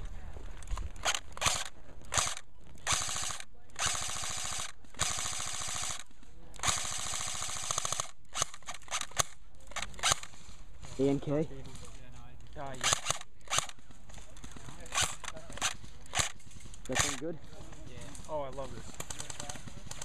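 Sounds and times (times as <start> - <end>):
airsoft machine gun firing: 0.9 - 10.4, 12.7 - 13.8, 14.4 - 17.2, 18.7 - 20.0.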